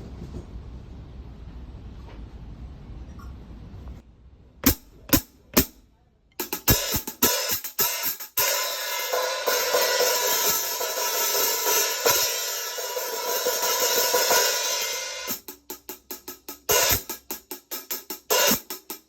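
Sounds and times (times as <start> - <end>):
hi-hat cymbals struck: 4.6 - 5.8, 6.4 - 19.0
bright cymbal wash: 6.4 - 18.9.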